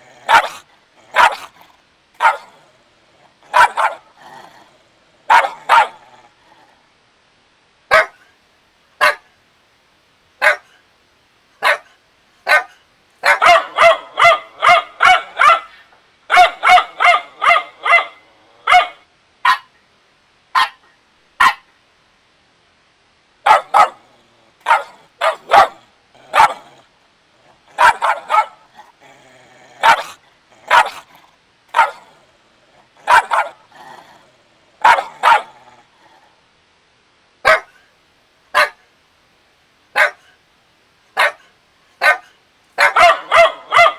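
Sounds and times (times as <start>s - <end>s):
puppy barking: 0.1s - 1.6s, 2.2s - 2.6s, 3.4s - 4.2s, 5.3s - 6.2s, 7.9s - 8.3s, 9.0s - 9.3s, 10.4s - 10.8s, 11.6s - 19.8s, 20.6s - 21.7s, 23.5s - 24.0s, 24.6s - 26.8s, 27.7s - 28.9s, 29.8s - 32.2s, 33.0s - 33.7s, 34.8s - 35.6s, 37.4s - 37.8s, 38.6s - 38.8s, 40.0s - 40.4s, 41.2s - 43.9s.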